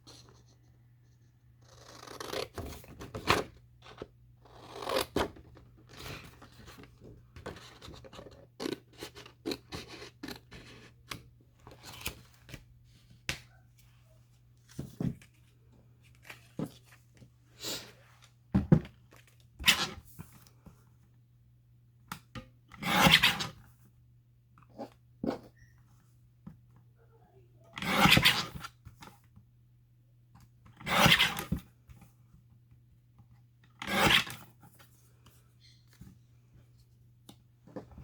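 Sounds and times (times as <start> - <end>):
paper rustling and shuffling: 11.7 - 17.3.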